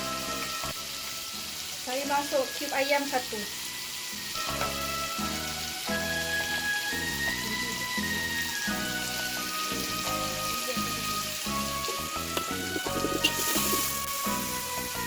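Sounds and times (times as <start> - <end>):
background music: 0.0 - 15.0
chicken sizzling in oil: 0.0 - 15.0.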